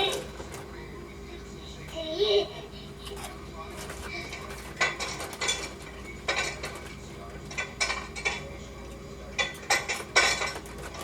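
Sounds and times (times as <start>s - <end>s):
dishes and cutlery clattering: 3.0s - 11.0s.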